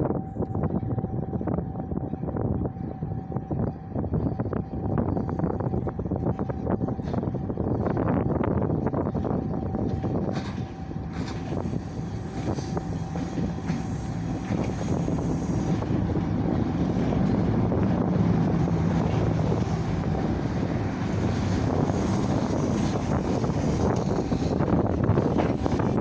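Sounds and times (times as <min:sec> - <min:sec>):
wind buffeting microphone: 0:00.0 - 0:26.0
freight train rumbling past: 0:07.1 - 0:26.0.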